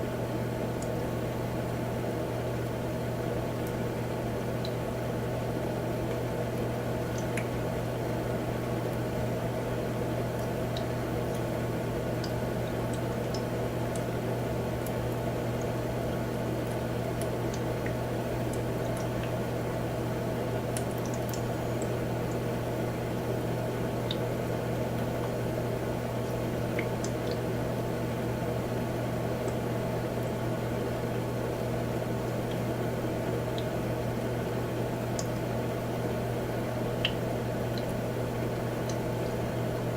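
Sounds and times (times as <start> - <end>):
humidifier hum and hiss: 0.0 - 39.9
faint water ticks: 0.7 - 1.0, 3.5 - 4.8, 6.0 - 7.6, 10.3 - 19.4, 20.6 - 23.2, 24.0 - 25.5, 26.1 - 28.2, 31.9 - 35.6, 36.9 - 39.5.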